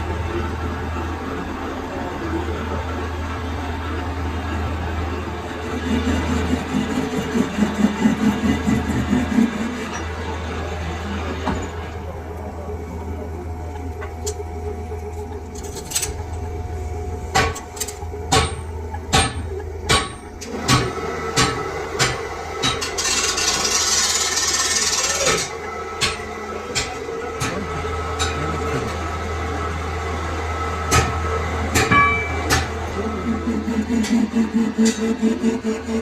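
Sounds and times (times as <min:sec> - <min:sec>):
workshop machinery humming: 0:00.0 - 0:36.0
sharp metal knocks: 0:17.3 - 0:22.9, 0:31.8 - 0:32.8.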